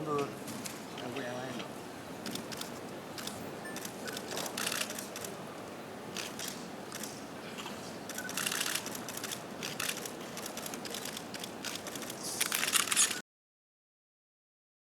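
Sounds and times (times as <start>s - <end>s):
camera shutters clicking: 2.2s - 5.4s, 6.2s - 13.2s.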